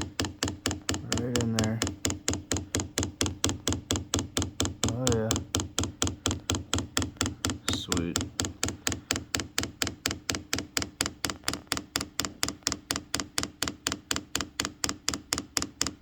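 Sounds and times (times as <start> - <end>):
fuel pump ticking: 0.0 - 16.0.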